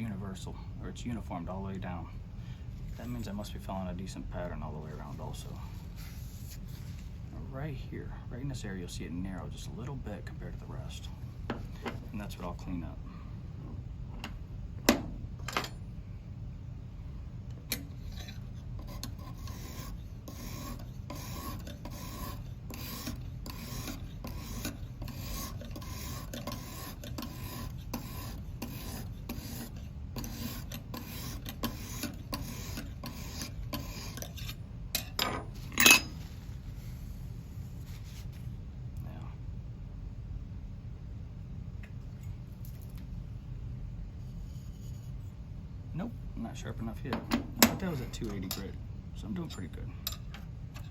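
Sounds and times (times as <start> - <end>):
sharpening hone scraping knife edge: 18.0 - 34.6.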